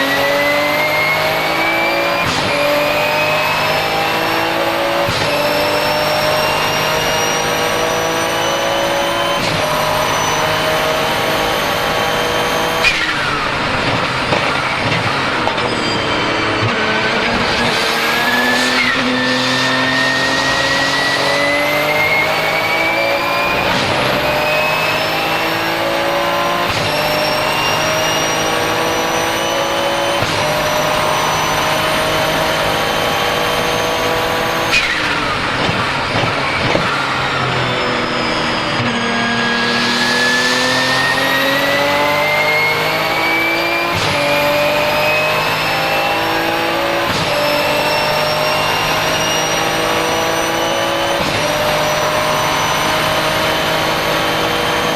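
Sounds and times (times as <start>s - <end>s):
race car engine accelerating: 0.0s - 54.9s
turbo whistle: 15.4s - 17.0s.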